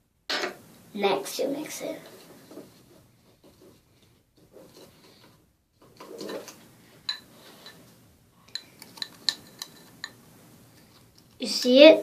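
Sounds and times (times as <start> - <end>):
fork scraping: 6.0 - 7.8.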